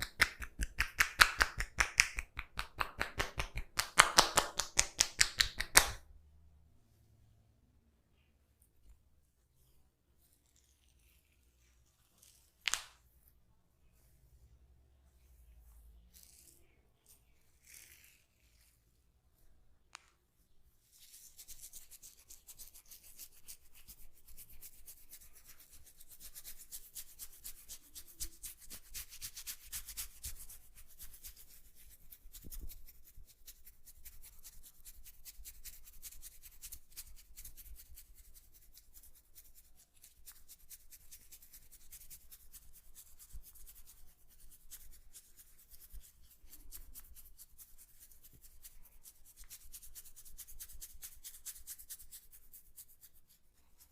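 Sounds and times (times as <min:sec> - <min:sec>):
hands scratching through hair: 0:00.0 - 0:06.0, 0:15.7 - 0:18.8, 0:20.8 - 0:53.9.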